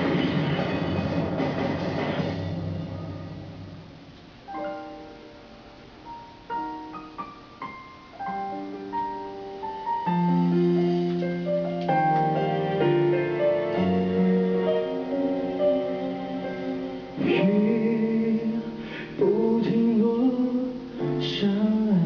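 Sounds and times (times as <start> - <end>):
slow piano music: 0.0 - 22.0.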